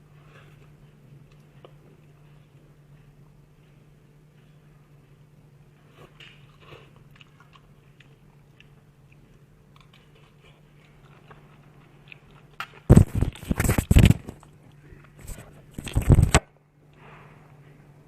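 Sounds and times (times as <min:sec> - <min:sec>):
chewing: 0:00.1 - 0:16.2
biting and crunching: 0:05.8 - 0:16.5.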